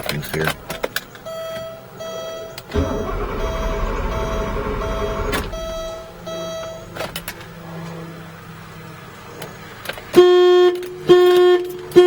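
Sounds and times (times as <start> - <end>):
car warning tone beeping: 0.3 - 7.6
starter motor rumbling: 2.4 - 9.9.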